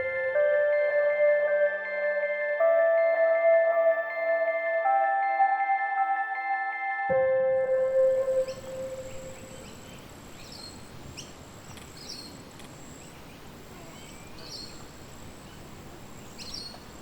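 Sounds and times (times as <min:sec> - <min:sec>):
held music note: 0:00.0 - 0:09.6
birds chirping: 0:06.4 - 0:17.0.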